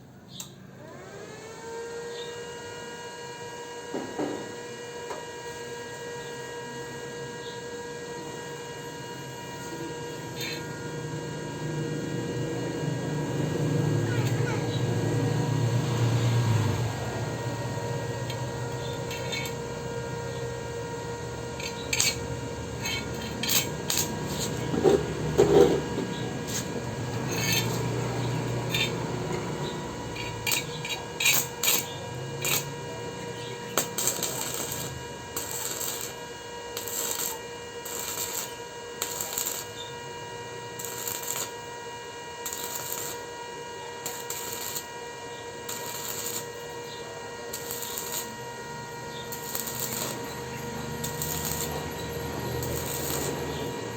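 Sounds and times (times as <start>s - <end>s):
electrical hum: 4.4s - 53.9s
welding hiss bursts: 13.2s - 20.8s, 21.4s - 32.8s, 33.6s - 40.0s, 40.6s - 41.8s, 42.4s - 43.4s, 44.0s - 44.9s, 45.6s - 46.7s, 47.4s - 48.4s, 49.3s - 53.9s
metal clinks and scraping: 19.1s - 19.6s, 21.6s - 29.1s, 30.1s - 32.7s.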